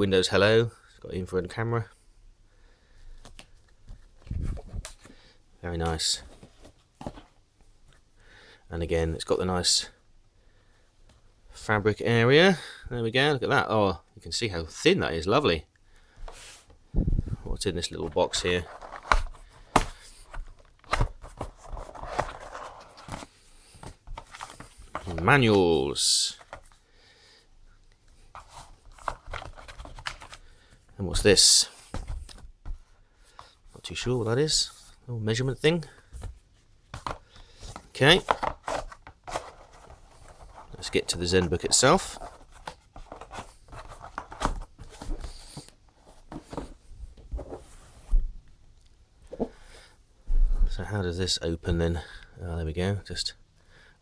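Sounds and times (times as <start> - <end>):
paper rustling: 18.0 - 26.8, 28.3 - 30.5, 36.1 - 48.2.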